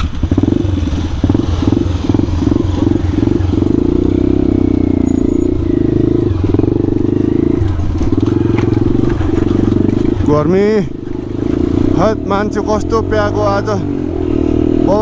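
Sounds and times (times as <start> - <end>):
motorcycle engine running: 0.0 - 15.0.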